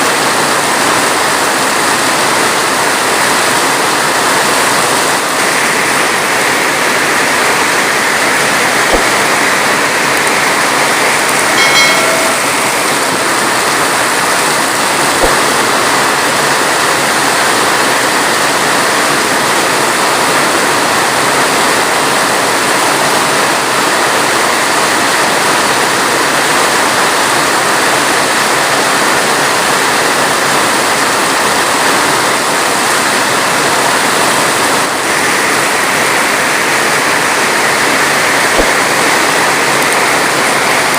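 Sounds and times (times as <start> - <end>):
heavy rain: 0.0 - 40.9
brief high-pitched sound: 11.3 - 13.9.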